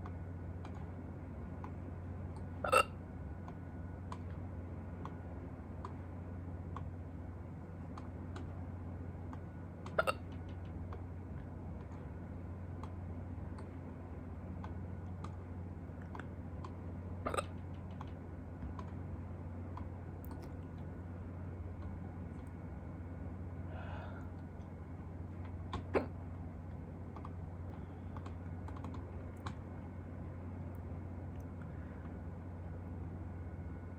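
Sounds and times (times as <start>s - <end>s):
person hiccuping: 2.6s - 3.0s, 10.0s - 10.2s, 17.3s - 17.6s, 25.9s - 26.2s
soft breath: 23.6s - 24.5s, 27.7s - 28.4s, 31.6s - 32.3s.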